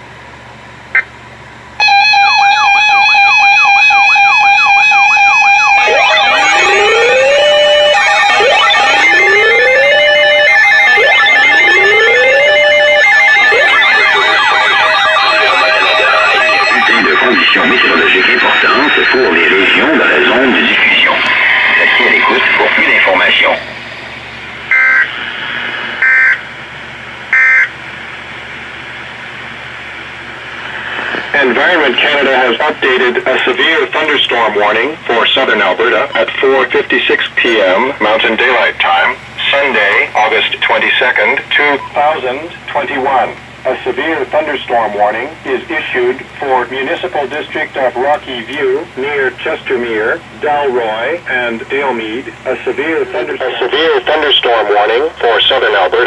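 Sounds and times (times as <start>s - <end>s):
data burst signal: 1.8s - 26.5s, 27.3s - 27.7s
electronic alert tone sweeping: 5.8s - 24.0s
steady hiss: 27.7s - 32.2s.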